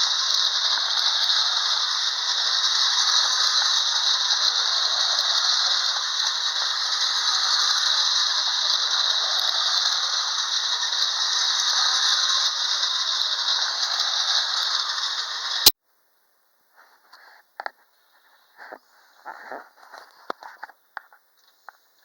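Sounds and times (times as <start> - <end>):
clockwork toy train rattling: 0.0 - 15.7.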